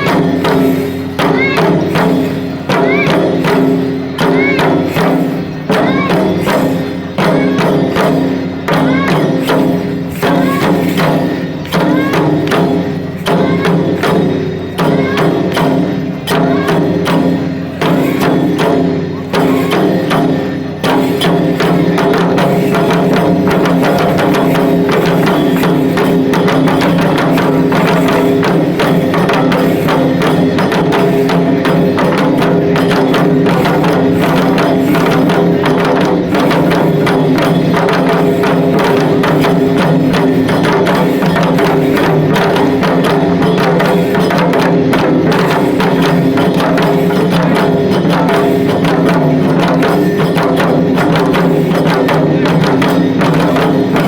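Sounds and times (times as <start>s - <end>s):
taiko drum: 0.0s - 54.0s.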